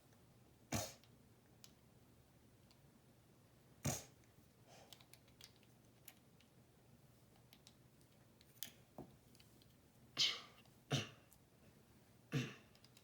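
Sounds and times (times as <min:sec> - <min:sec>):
lego bricks clicking together: 0:04.9 - 0:06.5, 0:07.4 - 0:09.8.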